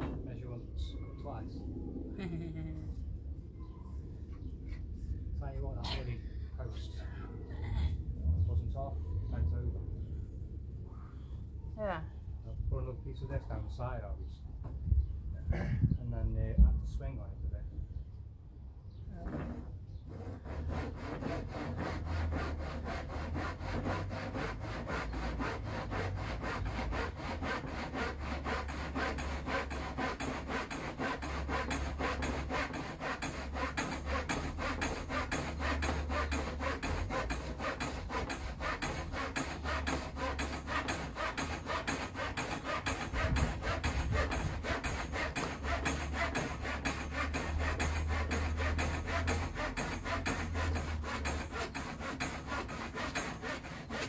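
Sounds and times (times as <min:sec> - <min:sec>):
hand saw cutting wood: 0:19.4 - 0:54.0.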